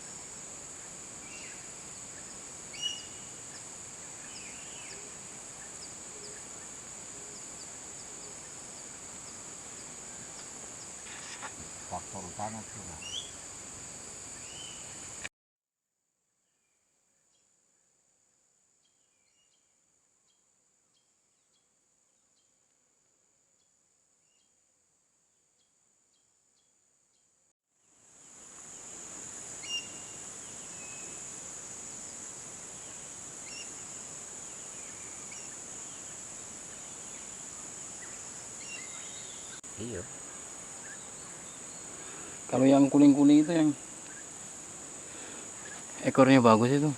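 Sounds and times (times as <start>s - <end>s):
insects droning: 0.0s - 15.3s, 27.8s - 46.9s.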